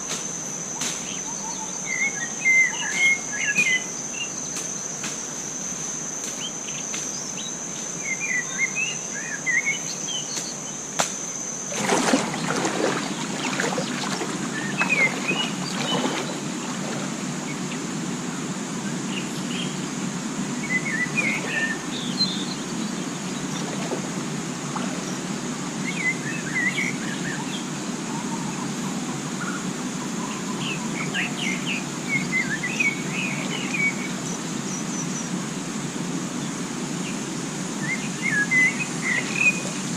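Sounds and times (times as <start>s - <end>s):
high-pitched insect drone: 0.0s - 26.9s
birds chirping: 6.4s - 35.4s.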